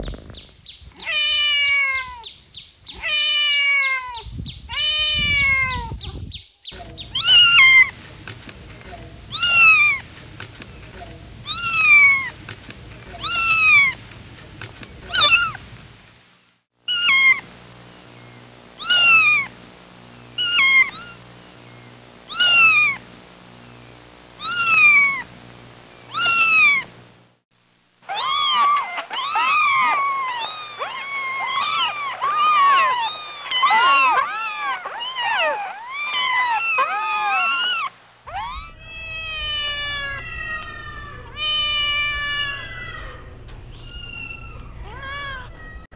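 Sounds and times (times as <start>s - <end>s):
kittens meowing: 0.9s - 2.3s, 2.9s - 6.2s, 7.1s - 7.9s, 9.3s - 10.0s, 11.4s - 12.4s, 13.1s - 14.1s, 15.0s - 15.6s, 16.9s - 17.5s, 18.8s - 19.5s, 20.4s - 21.2s, 22.3s - 23.0s, 24.4s - 25.3s, 26.1s - 26.9s, 28.1s - 45.9s.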